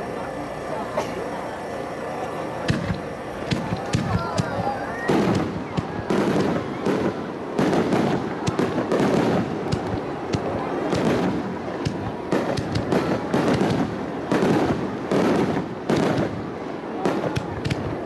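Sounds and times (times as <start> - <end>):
fireworks shells booming: 2.6 - 18.0
sharp crackling: 2.6 - 18.0.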